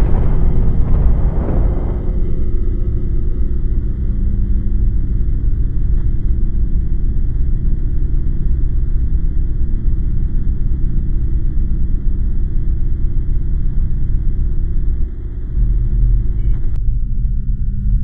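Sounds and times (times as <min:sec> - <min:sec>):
steady low rumble: 0:00.0 - 0:18.0.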